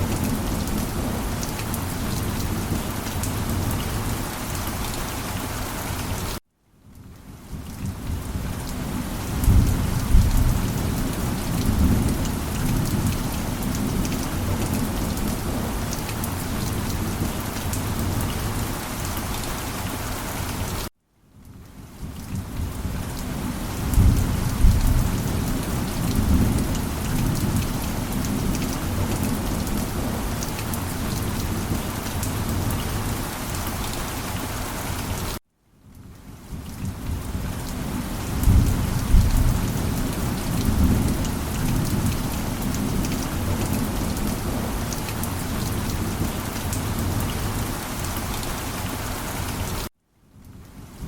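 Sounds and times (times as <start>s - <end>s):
heavy rain: 0.0s - 51.0s
thunder rumbling: 7.8s - 18.7s, 22.3s - 33.3s, 36.9s - 47.7s.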